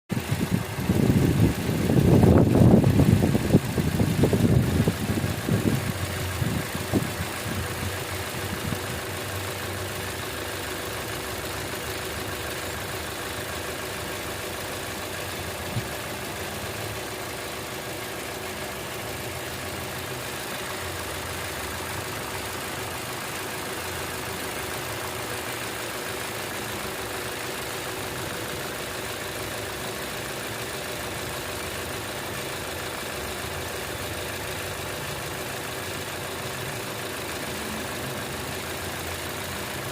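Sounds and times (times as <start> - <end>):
car engine idling: 0.1 - 39.9.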